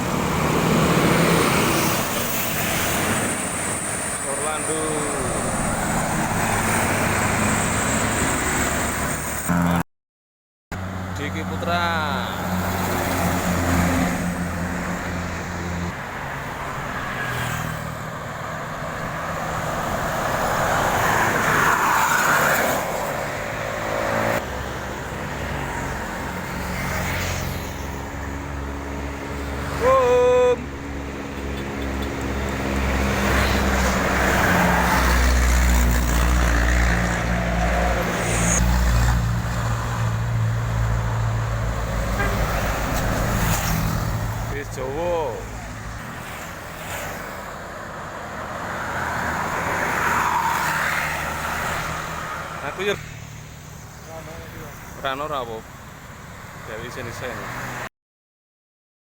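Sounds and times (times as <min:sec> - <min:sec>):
buses passing: 0:00.0 - 0:09.8, 0:10.8 - 0:57.9
tyres on the road: 0:00.0 - 0:09.9, 0:10.7 - 0:57.9
bus horn: 0:42.0 - 0:43.0.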